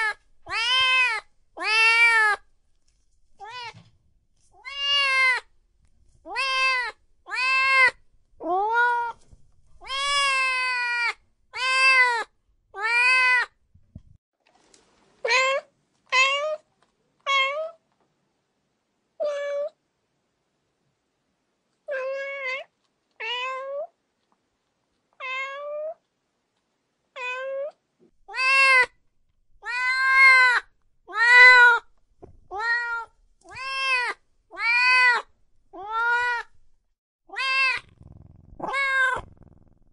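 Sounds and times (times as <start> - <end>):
cats meowing: 0.0 - 2.4, 4.6 - 5.4, 6.3 - 9.2, 9.8 - 13.5, 27.2 - 28.9, 29.6 - 31.8, 32.5 - 36.5, 37.3 - 39.4.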